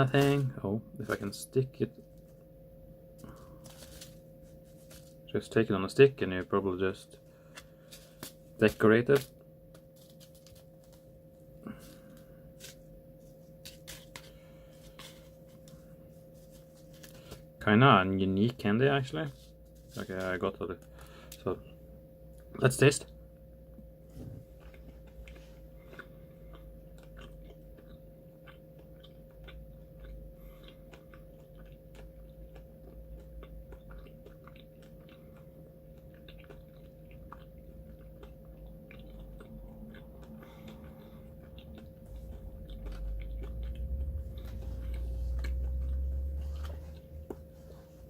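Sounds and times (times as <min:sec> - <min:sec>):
faint steady hum: 0:00.0 - 0:48.0
person chewing crunchy candy: 0:03.1 - 0:05.3, 0:07.2 - 0:17.6, 0:23.7 - 0:48.0
low rumble: 0:42.0 - 0:47.4.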